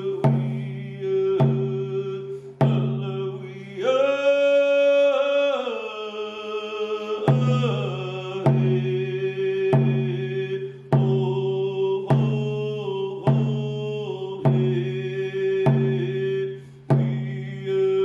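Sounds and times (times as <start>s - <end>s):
drum struck in slow beat: 0.0s - 3.2s, 7.3s - 15.0s, 15.6s - 17.5s
voice chanting long notes: 0.0s - 18.0s.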